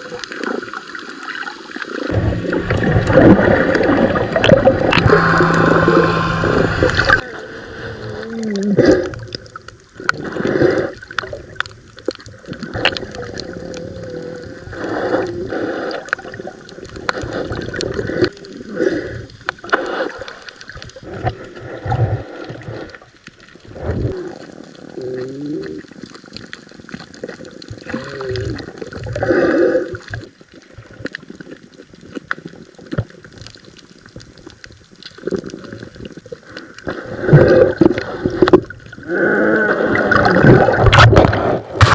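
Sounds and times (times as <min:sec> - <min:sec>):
water sloshing and gurgling: 0:00.0 - 0:41.9
brief wavering tones: 0:02.2 - 0:07.2.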